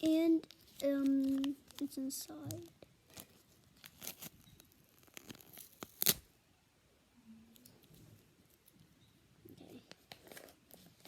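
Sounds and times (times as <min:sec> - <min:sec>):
wrapping being torn: 0:00.4 - 0:06.3.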